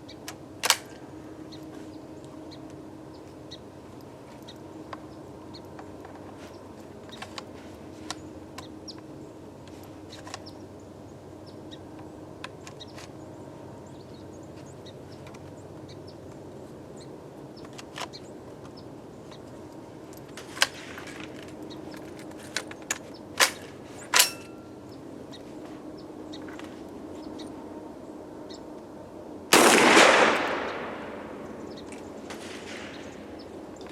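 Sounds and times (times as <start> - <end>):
shotgun clicks and clacks: 0.3 - 1.0, 20.4 - 24.6.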